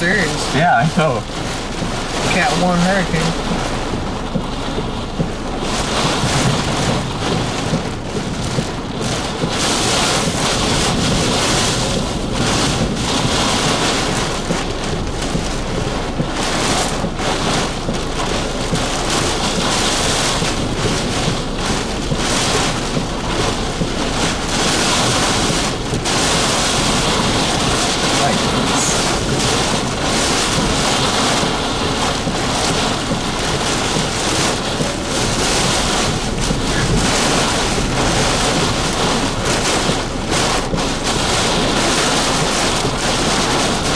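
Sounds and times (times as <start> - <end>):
rain pelting a vehicle: 0.0 - 43.9.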